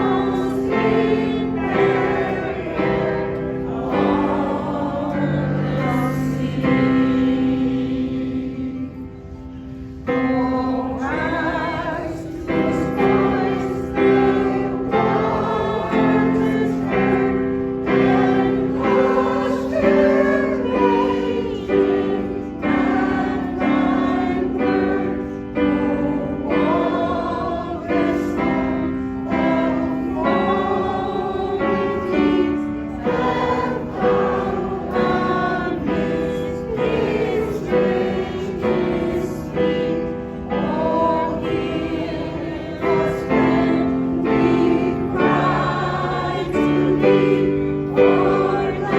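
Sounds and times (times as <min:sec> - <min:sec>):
choir singing: 0:00.0 - 0:48.9.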